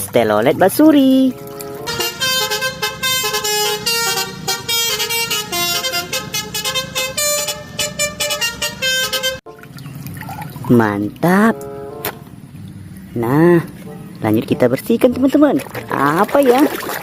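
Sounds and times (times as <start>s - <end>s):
musical multi-tone bus horn: 1.3s - 9.5s, 11.4s - 12.4s.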